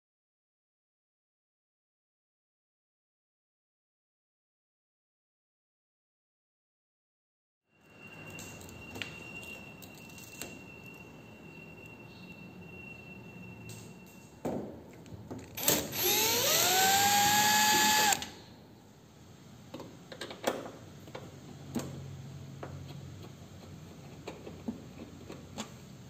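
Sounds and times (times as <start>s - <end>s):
cordless drill whining: 15.6s - 18.4s.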